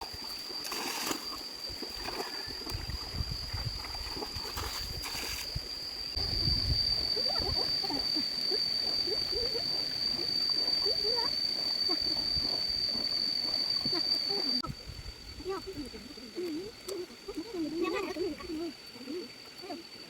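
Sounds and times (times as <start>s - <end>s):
water splashing and sloshing: 0.0s - 6.2s
high-pitched whine: 0.0s - 20.0s.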